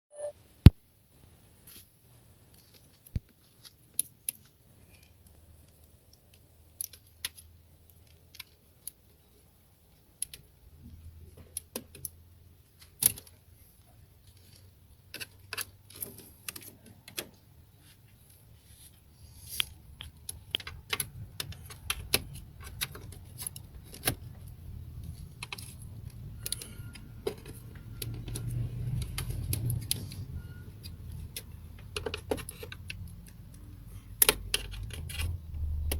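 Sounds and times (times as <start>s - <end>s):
plastic and metal parts clicking: 2.6s - 13.4s, 14.2s - 17.4s, 19.6s - 35.9s.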